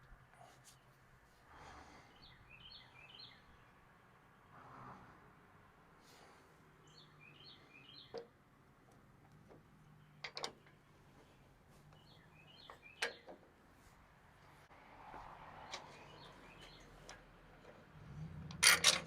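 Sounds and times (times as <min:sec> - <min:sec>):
faint bird chirping: 0:00.1 - 0:04.6, 0:06.1 - 0:08.3, 0:09.4 - 0:13.4, 0:15.6 - 0:18.3.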